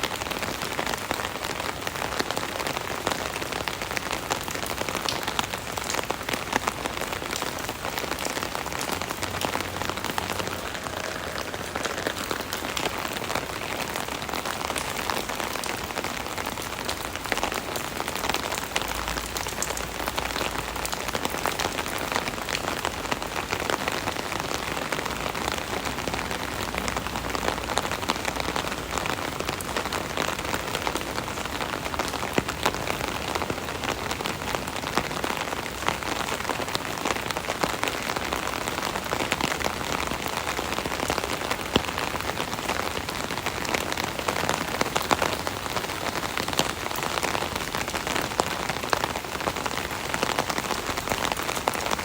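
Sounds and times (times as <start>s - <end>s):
rain on an umbrella: 0.0s - 52.0s.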